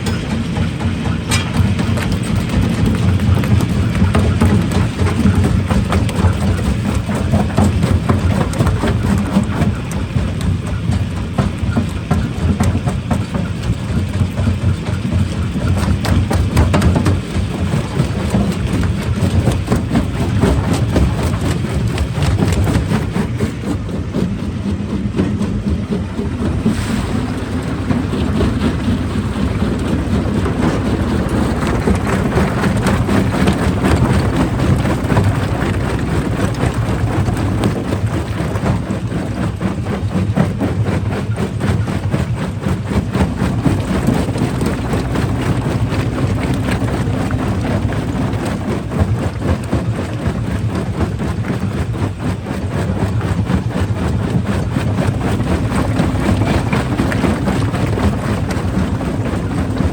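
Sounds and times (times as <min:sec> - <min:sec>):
rock crushing machinery: 0:00.0 - 0:59.9.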